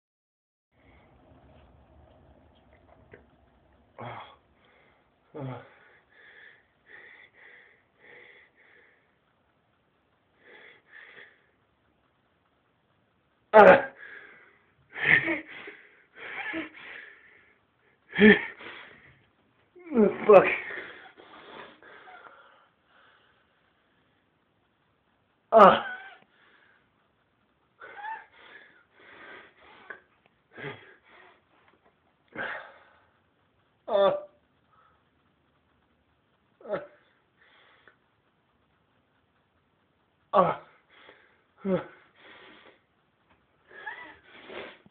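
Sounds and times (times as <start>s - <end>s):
wheezy gasping breaths: 4.0s - 9.3s, 10.4s - 11.6s, 20.6s - 24.0s, 27.8s - 33.2s, 40.7s - 43.0s
faint short breaths and sniffs: 43.8s - 44.9s.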